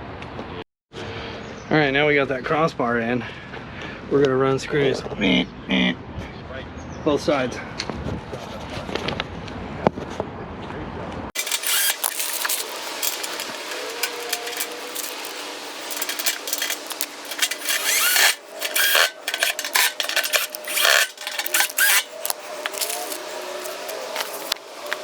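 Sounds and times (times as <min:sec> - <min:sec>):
metallic clicks and clatter: 0:11.4 - 0:25.0
power drill motor whirring: 0:11.4 - 0:25.0.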